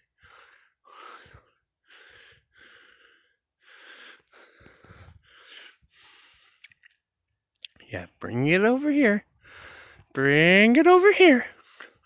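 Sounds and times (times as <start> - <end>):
heavy hoarse breathing: 0.0 - 6.7, 9.4 - 10.1.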